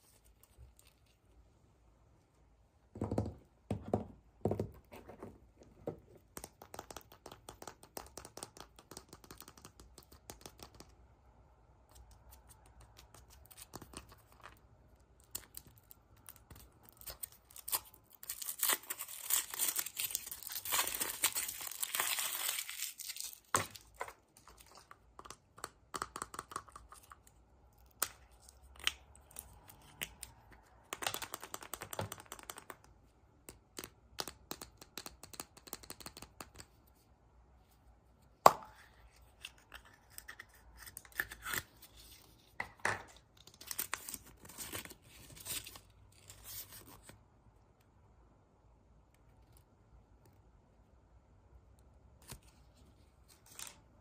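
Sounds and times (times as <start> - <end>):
packaging being torn and crinkled: 15.4 - 23.9.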